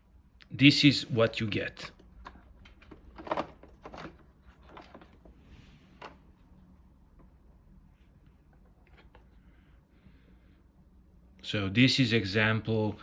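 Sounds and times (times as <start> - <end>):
plastic bin clicks and knocks: 2.0 - 5.3.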